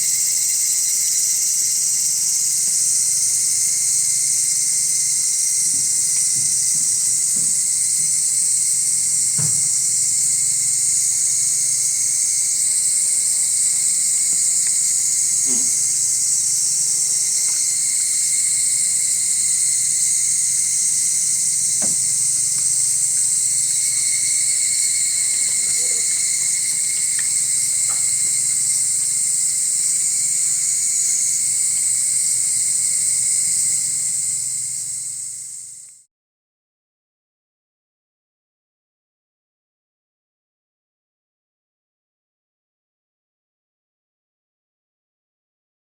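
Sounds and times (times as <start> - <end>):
insects chorus: 0.0 - 36.0.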